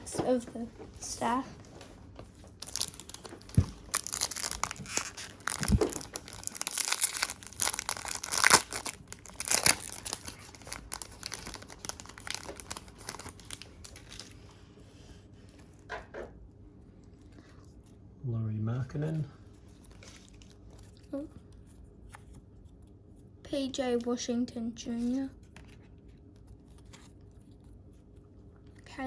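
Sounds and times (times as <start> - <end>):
wrapper tearing and crinkling: 2.6 - 14.3.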